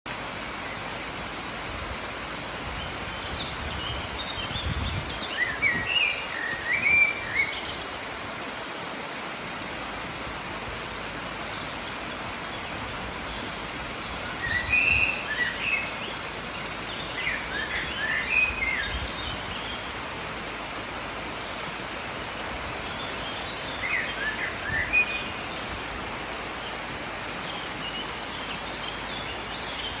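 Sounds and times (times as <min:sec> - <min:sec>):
waterfall rushing: 0:00.1 - 0:30.0
songbird chirping: 0:21.3 - 0:30.0.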